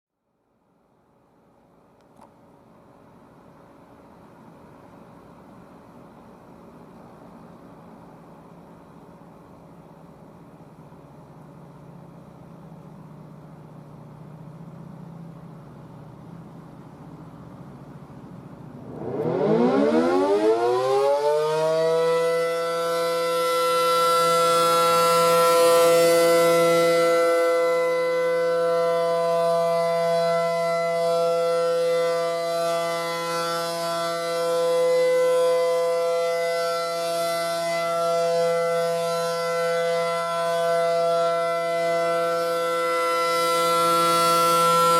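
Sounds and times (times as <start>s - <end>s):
tornado siren winding up: 18.8s - 44.9s.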